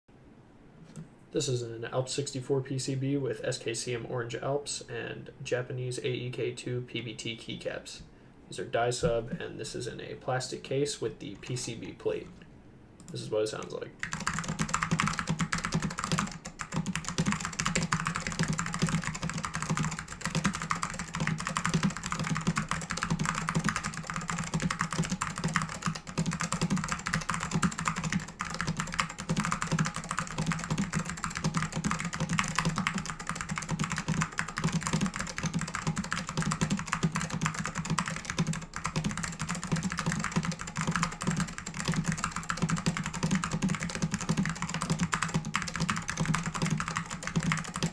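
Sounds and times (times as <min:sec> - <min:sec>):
fast mechanical keyboard typing: 0:13.6 - 0:47.9.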